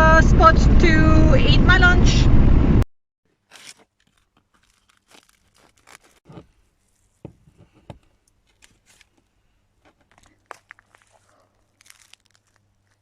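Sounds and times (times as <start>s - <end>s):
paper bag crinkling: 3.3s - 7.2s, 8.4s - 13.0s
crusty bread tearing: 3.3s - 13.0s.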